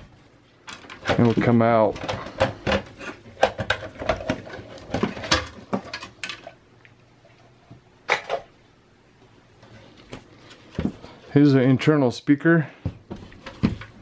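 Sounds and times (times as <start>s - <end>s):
computer case parts clicking and rattling: 0.6s - 6.6s.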